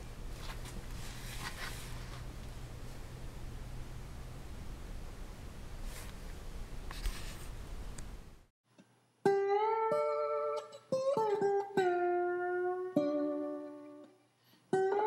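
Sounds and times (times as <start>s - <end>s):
steady background hiss: 0.0s - 9.2s
plucked guitar music: 9.2s - 15.0s.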